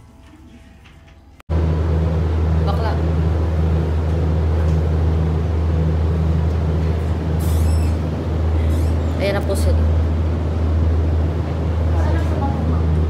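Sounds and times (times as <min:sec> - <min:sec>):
vehicle engine drone: 0:01.5 - 0:13.0
high squeak: 0:07.4 - 0:08.1.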